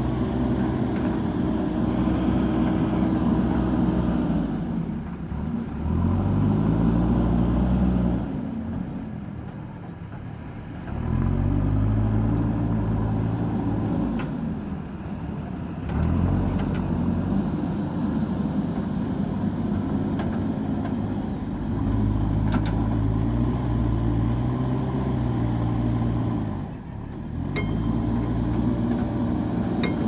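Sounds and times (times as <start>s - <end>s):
diesel engine under load: 0.0s - 30.0s
faint metallic clinks: 27.6s - 28.0s.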